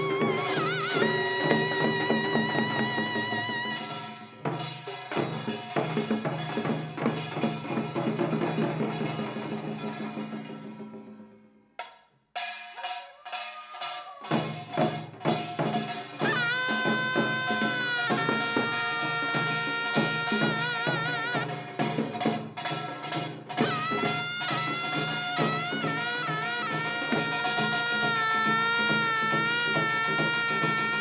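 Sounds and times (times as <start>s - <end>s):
drum beat: 0.0s - 4.0s, 13.6s - 31.0s
wind instrument melody with vibrato: 0.0s - 4.2s, 16.2s - 22.1s, 23.5s - 31.0s.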